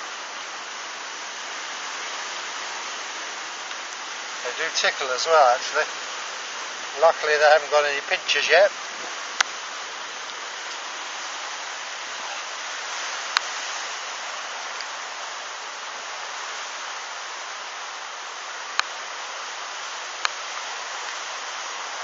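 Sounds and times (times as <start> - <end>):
steady rushing hiss: 0.0 - 22.0.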